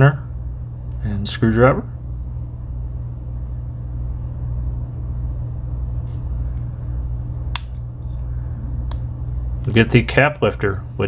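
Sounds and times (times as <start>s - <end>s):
steady low hum: 0.0s - 11.0s
knife tool snapping into place: 7.6s - 7.8s.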